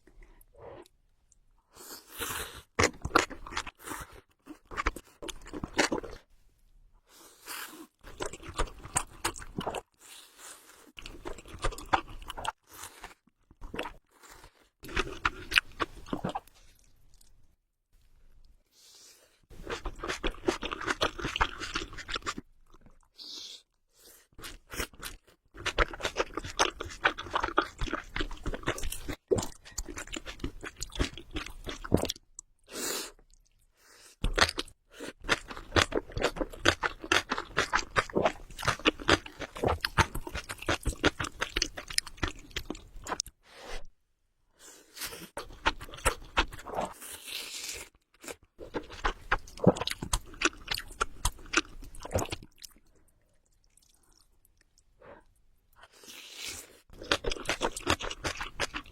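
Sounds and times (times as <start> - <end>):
chewing noodles with wet smacks: 24.5 - 32.2, 48.2 - 54.9, 56.9 - 58.9.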